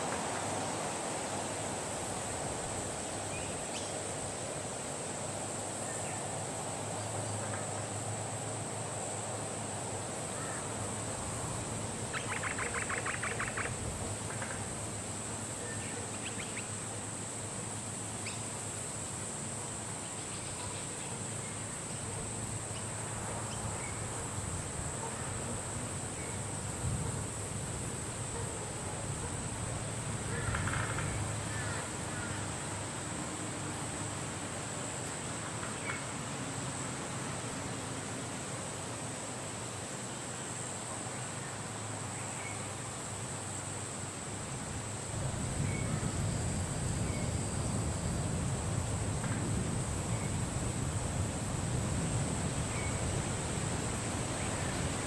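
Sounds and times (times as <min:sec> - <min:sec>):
bird chirps: 0:12.1 - 0:13.7
rapid bird trill: 0:12.1 - 0:14.5
wind blowing: 0:44.6 - 0:55.0.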